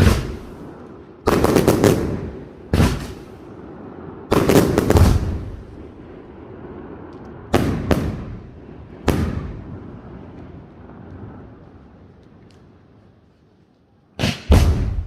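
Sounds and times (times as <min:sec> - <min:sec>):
firework shells bursting: 0:00.0 - 0:03.4.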